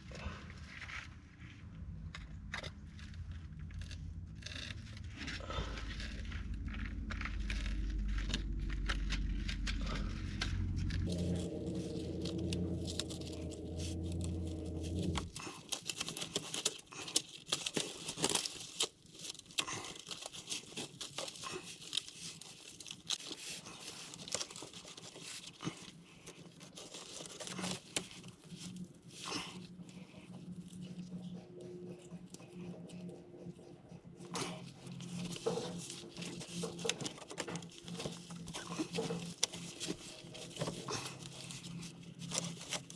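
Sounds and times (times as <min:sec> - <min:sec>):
steady low hum: 0:00.0 - 0:15.7
bandage wrap crinkling and tearing: 0:02.8 - 0:32.1, 0:34.3 - 0:42.9.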